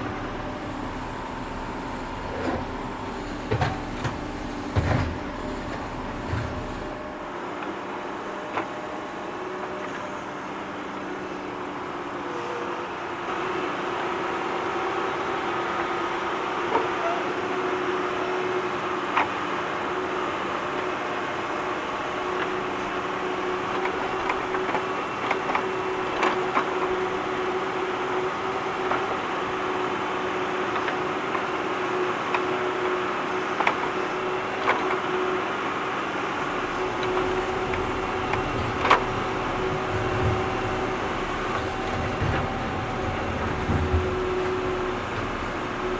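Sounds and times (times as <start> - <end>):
tractor diesel engine: 0.0 - 8.5, 13.9 - 45.9
digging clanks and knocks: 36.4 - 45.9.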